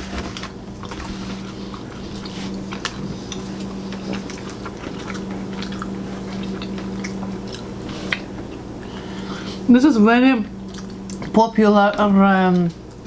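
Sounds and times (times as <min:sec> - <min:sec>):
chewing and biting food: 0:00.0 - 0:08.7, 0:10.6 - 0:11.4
steady low hum: 0:00.0 - 0:13.0
wet mouth clicks: 0:10.7 - 0:11.2.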